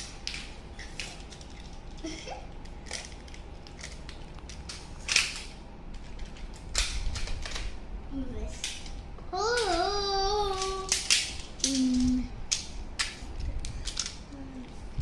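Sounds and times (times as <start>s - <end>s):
plastic tiles clacking together: 10.5s - 14.2s.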